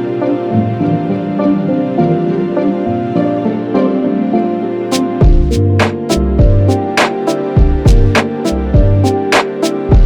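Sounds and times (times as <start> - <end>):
kick drum: 5.2 - 5.6, 6.4 - 6.7, 7.6 - 8.2, 8.8 - 9.1.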